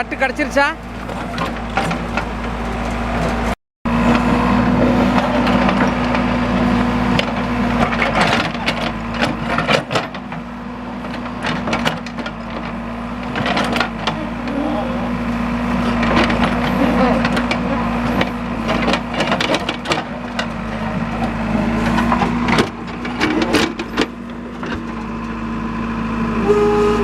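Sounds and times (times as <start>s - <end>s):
diesel engine running: 0.0s - 27.0s
sharp cracking and crunching knocks: 16.0s - 25.0s.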